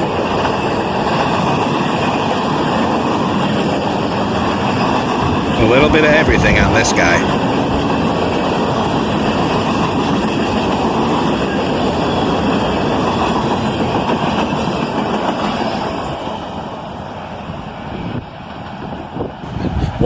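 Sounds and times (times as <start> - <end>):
freight train cars rolling on rails: 0.0 - 20.0.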